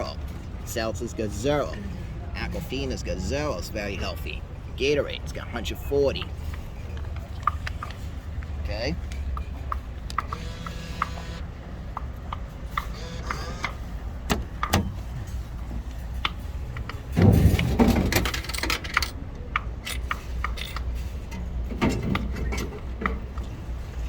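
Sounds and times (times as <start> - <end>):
vending machine clicks and knocks: 12.7 - 15.4, 16.9 - 19.2.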